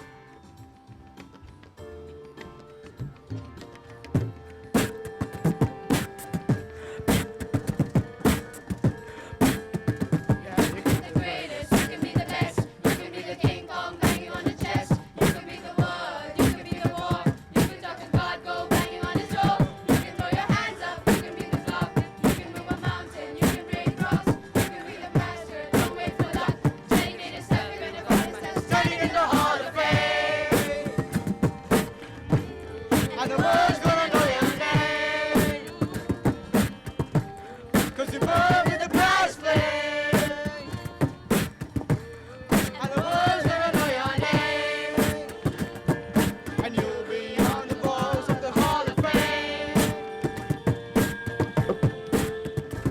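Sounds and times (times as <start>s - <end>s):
music with fast drum beat: 3.4s - 52.9s
person singing: 32.9s - 36.8s, 46.6s - 50.2s.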